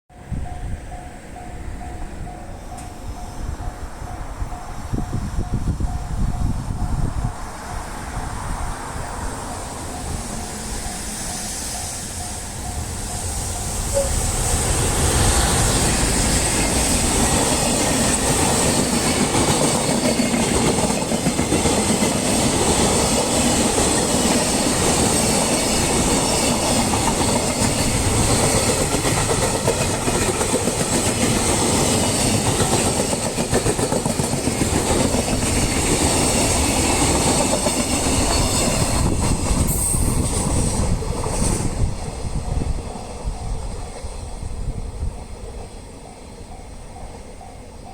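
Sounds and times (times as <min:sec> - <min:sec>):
freight train passing: 0:00.1 - 0:47.9
wheels clattering on rails: 0:09.0 - 0:44.3.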